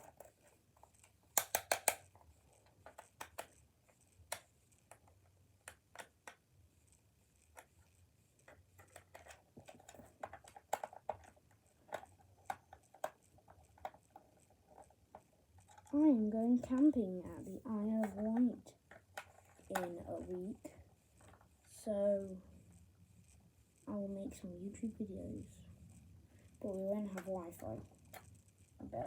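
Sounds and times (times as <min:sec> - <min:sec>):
screwdriver clicking on plastic shell: 0:01.4 - 0:02.1.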